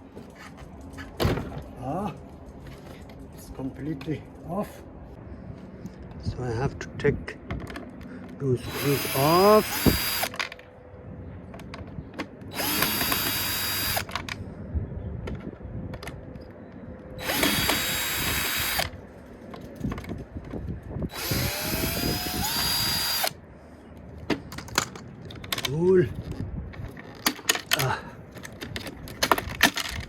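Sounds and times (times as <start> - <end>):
power drill motor whining: 8.6 - 10.4, 12.5 - 14.1, 17.2 - 18.9, 21.1 - 23.4.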